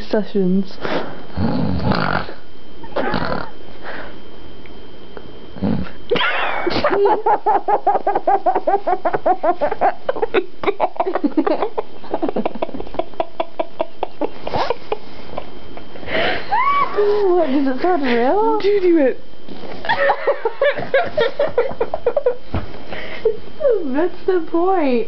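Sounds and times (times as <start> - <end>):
person making mock snoring snorts: 1.3 - 3.6, 5.6 - 6.0.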